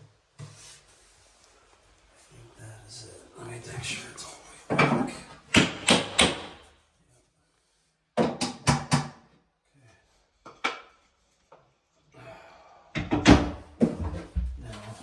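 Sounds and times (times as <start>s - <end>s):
hammer knocking nails into wood: 5.5s - 6.6s, 8.2s - 9.2s.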